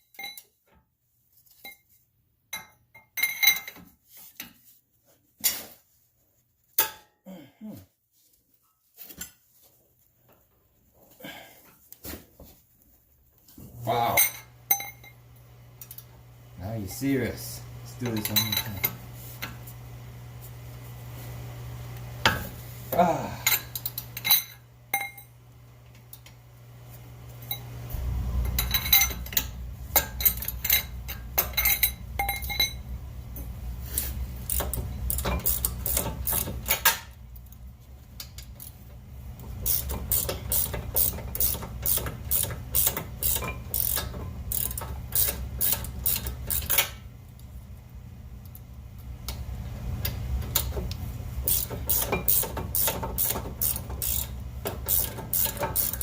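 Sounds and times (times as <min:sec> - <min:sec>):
low steady hum: 0:12.8 - 0:56.0
ratchet wrench clicking: 0:33.9 - 0:37.0, 0:39.6 - 0:47.0, 0:51.4 - 0:56.0.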